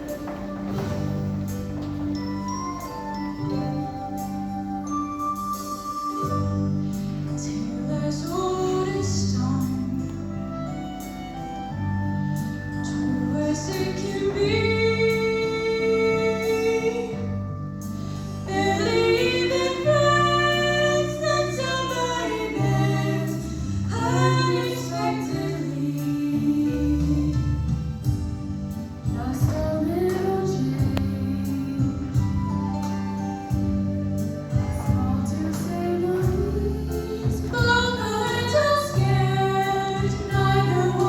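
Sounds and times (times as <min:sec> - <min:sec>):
instrumental accompaniment: 0:00.0 - 0:41.0
choir singing: 0:18.7 - 0:27.4, 0:34.6 - 0:41.0.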